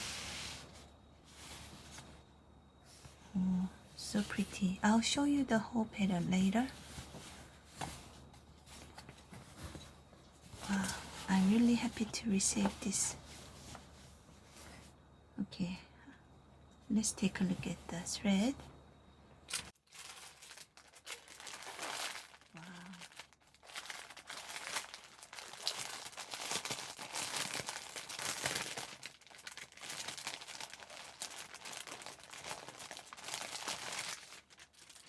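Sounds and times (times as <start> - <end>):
packaging crinkling and rustling: 6.2 - 14.8, 19.5 - 35.0.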